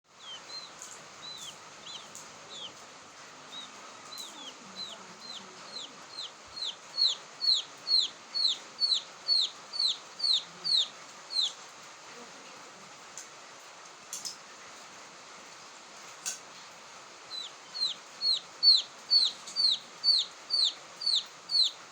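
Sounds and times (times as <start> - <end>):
quail chick whistling: 0.2 - 2.8, 3.5 - 11.6, 17.3 - 21.8.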